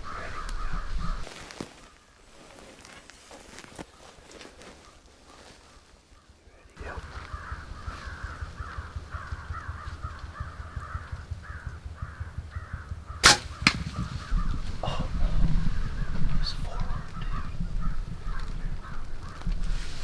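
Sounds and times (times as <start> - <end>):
birds cawing: 0.0 - 1.3, 6.8 - 19.6
sharp snaps: 13.2 - 14.4.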